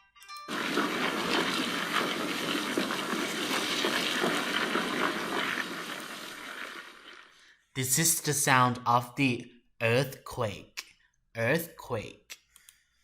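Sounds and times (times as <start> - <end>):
earthquake roar: 0.5 - 7.1.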